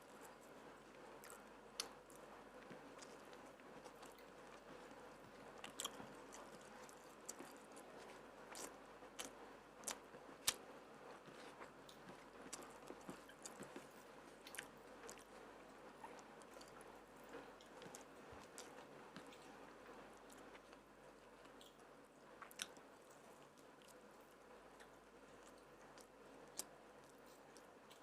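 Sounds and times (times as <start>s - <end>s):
person chewing: 1.1s - 15.4s, 17.6s - 19.5s, 22.4s - 22.8s.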